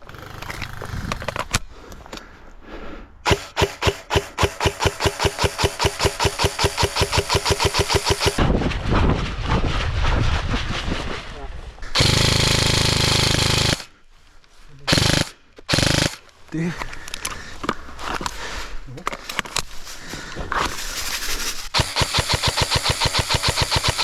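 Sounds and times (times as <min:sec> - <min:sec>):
airsoft rifle firing: 0:03.2 - 0:08.4, 0:11.9 - 0:13.9, 0:14.9 - 0:16.2, 0:21.7 - 0:24.0.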